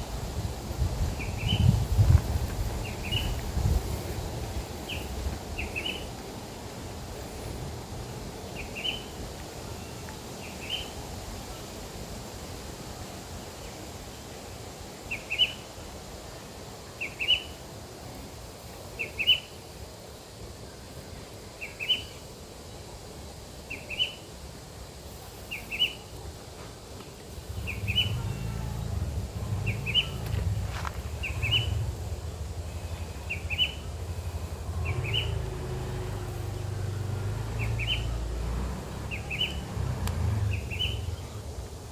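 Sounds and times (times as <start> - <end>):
steady low rumble: 27.3 - 41.9.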